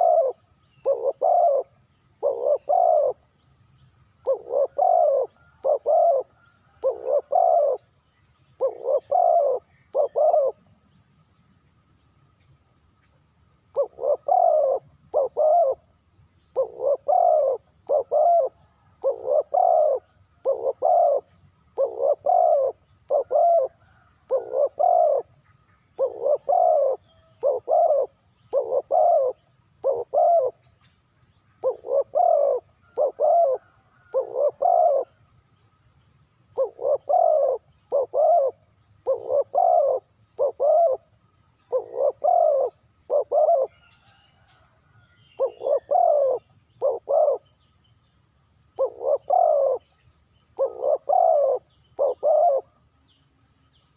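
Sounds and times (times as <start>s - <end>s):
dove cooing: 0.0s - 3.3s, 4.2s - 7.9s, 8.6s - 10.7s, 13.7s - 15.9s, 16.5s - 25.4s, 26.0s - 30.7s, 31.6s - 35.2s, 36.5s - 44.7s, 45.4s - 47.6s, 48.8s - 49.9s, 50.6s - 52.8s.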